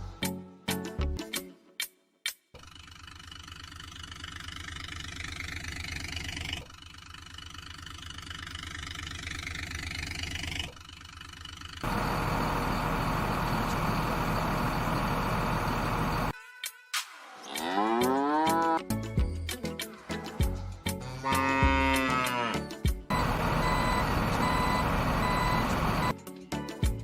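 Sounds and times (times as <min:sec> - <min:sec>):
vehicle engine running: 0:02.6 - 0:16.3, 0:23.1 - 0:26.1.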